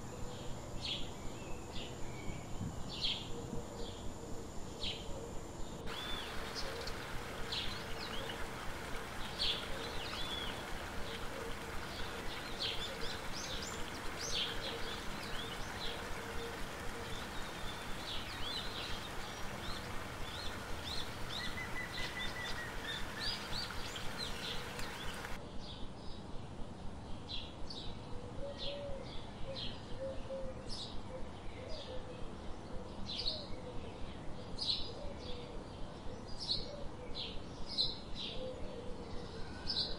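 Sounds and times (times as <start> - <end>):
steady background hiss: 0.0 - 39.9
birds chirping: 5.8 - 25.4.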